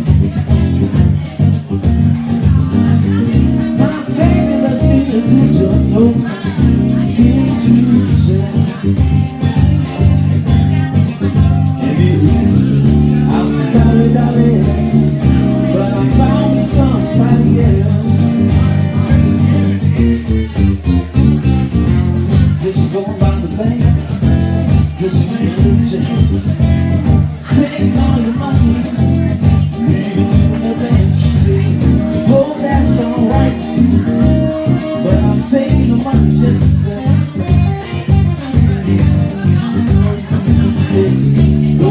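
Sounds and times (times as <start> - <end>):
guitar: 0.0 - 41.9
heavy bass line: 0.0 - 41.9
steady drum beat: 0.0 - 41.9.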